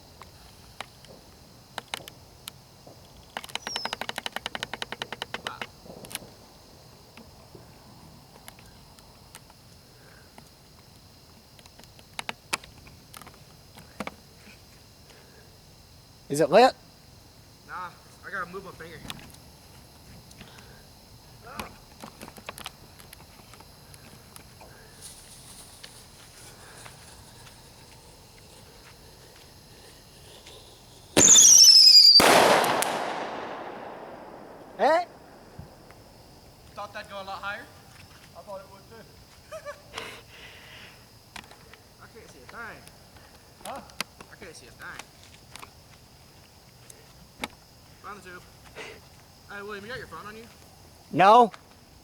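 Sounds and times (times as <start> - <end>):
sharp pops and clicks: 3.3 - 6.3, 31.2 - 34.8
firework whistle: 29.8 - 35.7
firework bang: 30.4 - 35.9.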